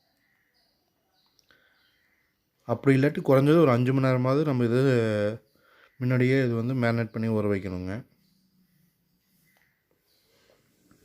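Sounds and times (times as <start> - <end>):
faint small clicks: 0.1 - 1.6.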